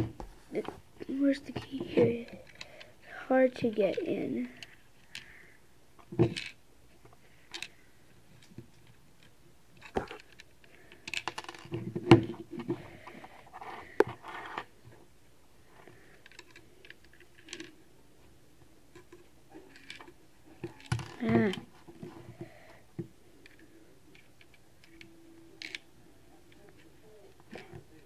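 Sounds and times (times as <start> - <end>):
plastic bricks clicking and rattling: 25.6 - 25.8.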